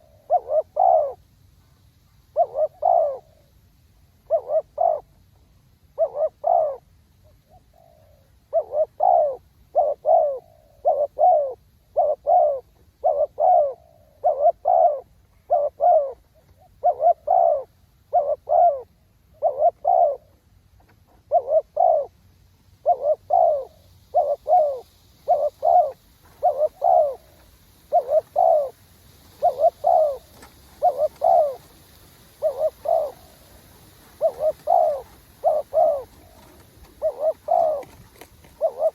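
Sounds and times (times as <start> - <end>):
doves cooing: 0.0 - 1.2, 2.3 - 3.5, 4.2 - 5.2, 5.9 - 20.4, 21.1 - 22.2, 22.8 - 38.9.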